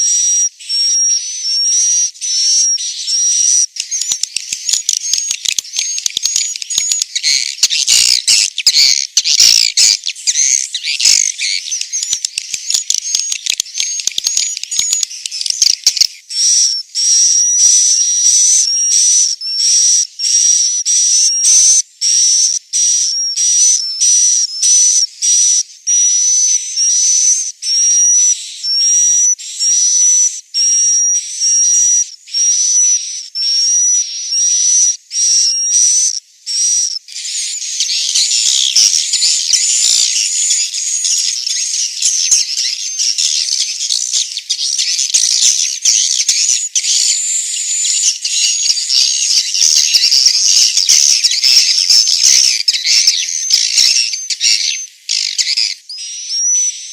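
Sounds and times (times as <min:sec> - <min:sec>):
many birds twittering: 0:00.0 - 0:56.9
single high bird chirping: 0:29.6 - 0:56.9.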